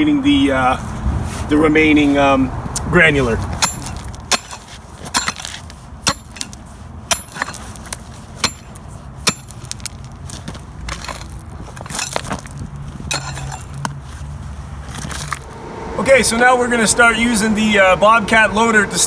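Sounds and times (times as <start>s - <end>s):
pickaxe striking asphalt: 3.6s - 12.5s, 13.1s - 13.8s
steady low hum: 15.0s - 19.0s.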